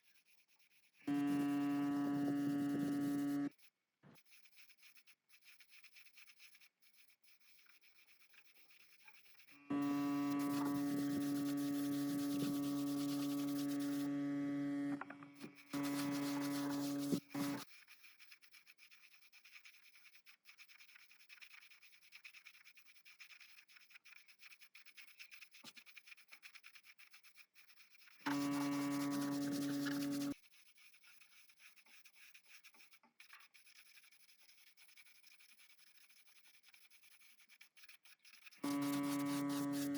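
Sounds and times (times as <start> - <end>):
faint scraping and ticking: 0.1 - 3.6, 4.2 - 14.3, 15.0 - 27.0, 27.7 - 39.9
power tool motor humming: 1.1 - 3.5, 9.7 - 17.6, 28.3 - 30.4, 38.6 - 39.9.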